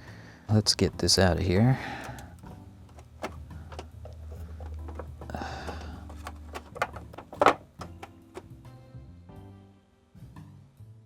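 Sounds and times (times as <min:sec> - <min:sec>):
clicks and knocks from plastic toy: 0:02.9 - 0:08.5.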